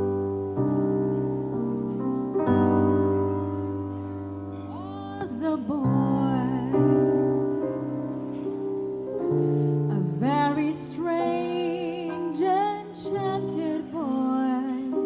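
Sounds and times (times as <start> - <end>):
piano chords: 0.0 - 15.0
woman singing: 4.7 - 7.2, 9.9 - 15.0.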